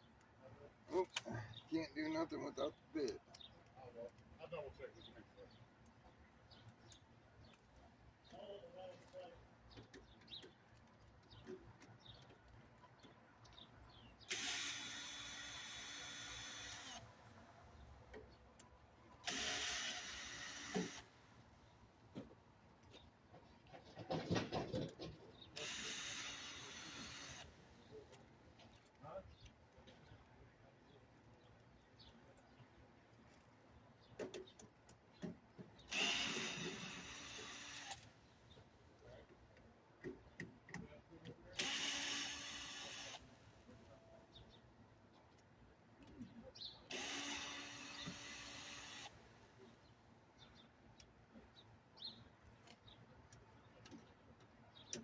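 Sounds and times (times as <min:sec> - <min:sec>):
faint birds chirping: 0:00.0 - 0:55.0
power drill running: 0:14.3 - 0:17.1, 0:19.2 - 0:21.1, 0:25.6 - 0:27.5, 0:35.9 - 0:38.0, 0:41.6 - 0:43.2, 0:46.9 - 0:49.2.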